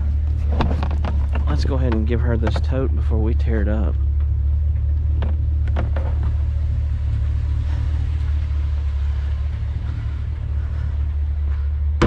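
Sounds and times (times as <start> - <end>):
truck engine idling: 0.0 - 12.0
light clicks and knocks: 0.2 - 3.1.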